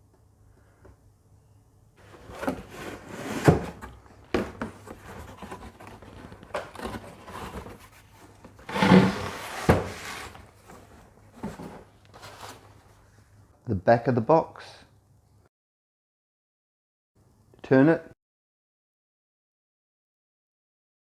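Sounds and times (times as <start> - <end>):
cardboard rubbing and scraping: 2.0 - 12.8.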